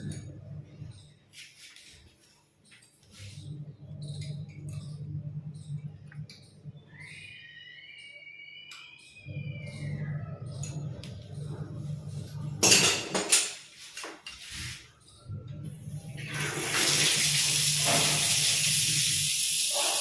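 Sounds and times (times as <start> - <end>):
water running from tap: 16.2 - 20.0.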